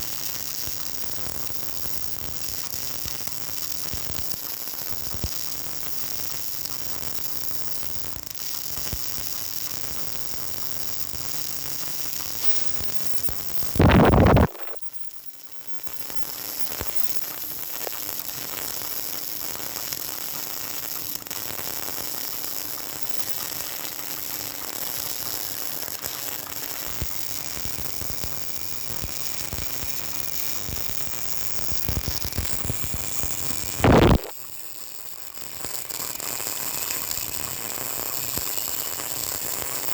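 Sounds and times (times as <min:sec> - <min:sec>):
arc welding crackling: 0:00.0 - 0:39.9
loud welding bursts: 0:12.4 - 0:14.8.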